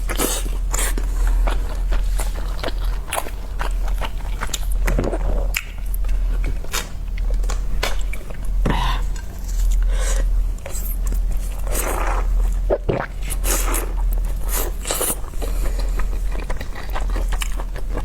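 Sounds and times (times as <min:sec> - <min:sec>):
chewing and wet mouth clicks: 0:03.9 - 0:06.1.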